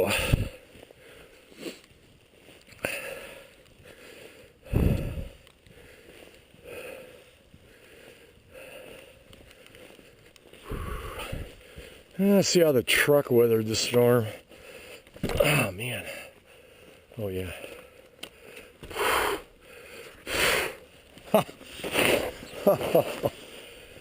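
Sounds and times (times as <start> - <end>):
footsteps crunching in snow: 0.0 - 18.1, 18.8 - 24.0.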